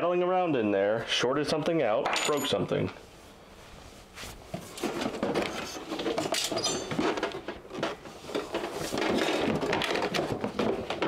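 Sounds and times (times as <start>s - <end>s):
clicks knocks and scraping of parts: 4.5s - 11.0s.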